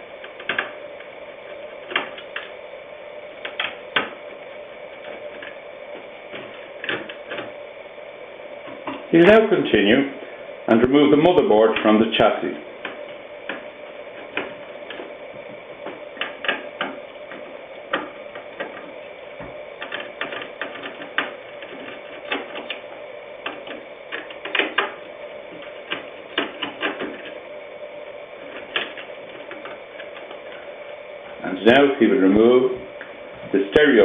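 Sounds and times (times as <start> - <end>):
steady background hum: 0.0 - 34.0
screwdriver clicking on metal parts: 19.8 - 22.8, 23.4 - 27.4.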